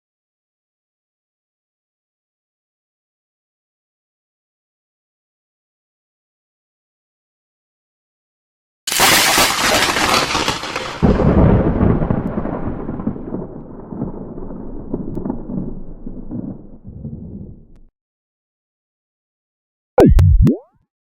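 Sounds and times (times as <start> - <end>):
thunder crack: 11.0 - 17.9
thunder rumble: 11.0 - 17.9
heavy thunder boom: 11.1 - 17.8.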